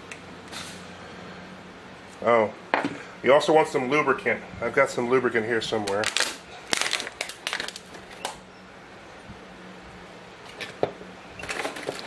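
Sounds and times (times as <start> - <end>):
faint steady hum: 0.0 - 11.6.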